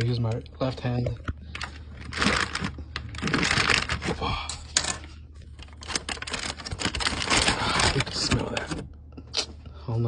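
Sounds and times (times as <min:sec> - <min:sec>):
packaging crackling and rustling: 0:00.0 - 0:08.8.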